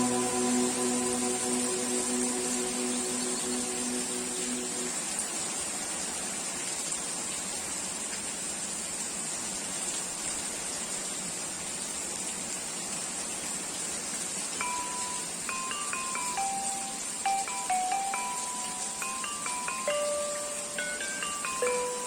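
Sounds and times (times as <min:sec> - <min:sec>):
high chime-like tones: 0:00.0 - 0:05.0, 0:14.6 - 0:22.0
heavy rain falling: 0:00.0 - 0:22.0.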